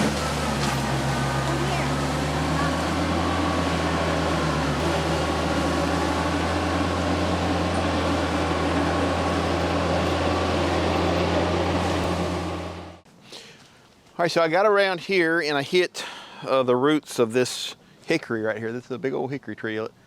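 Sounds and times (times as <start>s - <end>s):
tractor diesel engine droning: 0.0s - 13.1s.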